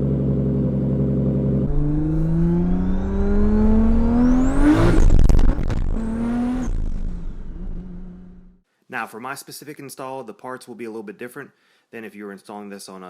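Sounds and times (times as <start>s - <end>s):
car engine accelerating hard: 0.2s - 8.6s
loud rough exhaust burst: 1.7s - 8.6s.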